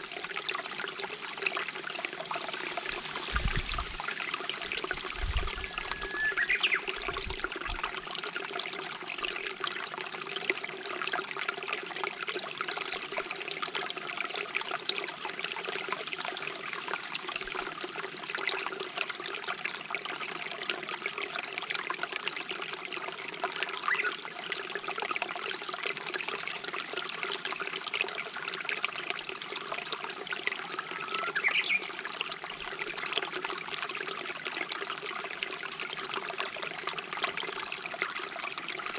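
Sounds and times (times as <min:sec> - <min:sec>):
stream babbling: 0:00.0 - 0:09.6, 0:29.2 - 0:38.9
bird calling: 0:05.5 - 0:07.2, 0:30.9 - 0:31.9.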